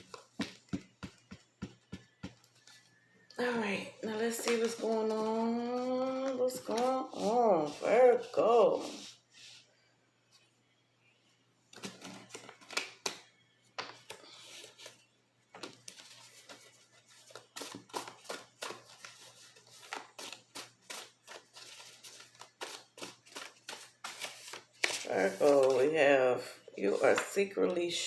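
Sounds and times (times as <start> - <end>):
cards being shuffled: 4.2 - 9.2, 11.8 - 15.0, 15.6 - 26.0.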